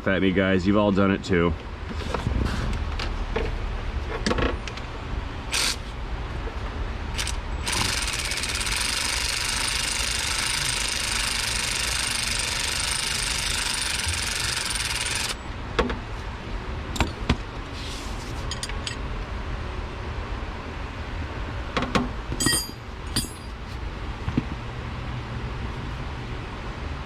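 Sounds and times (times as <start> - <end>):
power tool running: 5.5 - 5.8, 7.2 - 15.4
metal tools clinking: 22.4 - 23.6.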